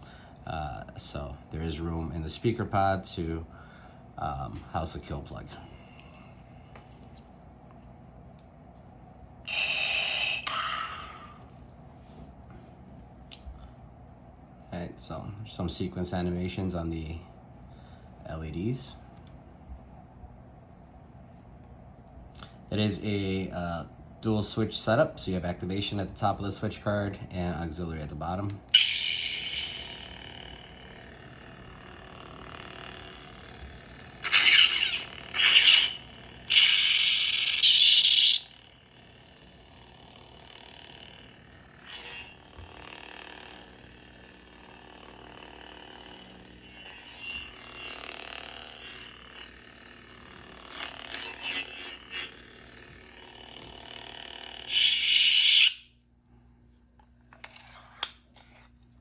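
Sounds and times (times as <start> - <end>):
lightsaber blade hum: 9.4 - 11.6, 28.7 - 53.6, 54.5 - 56.0
loud lightsaber effects: 9.5 - 11.4, 28.7 - 30.5, 34.2 - 38.6, 41.8 - 42.4, 54.7 - 55.9.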